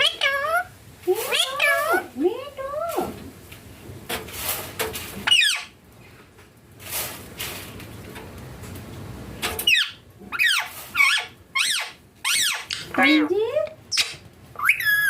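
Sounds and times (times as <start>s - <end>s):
parakeet squawking: 0.0s - 0.7s, 1.3s - 2.1s, 5.2s - 5.8s, 9.6s - 15.0s.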